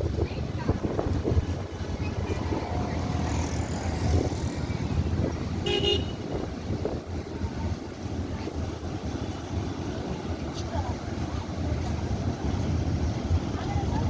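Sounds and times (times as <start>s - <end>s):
vehicle horn toot: 5.6s - 6.2s.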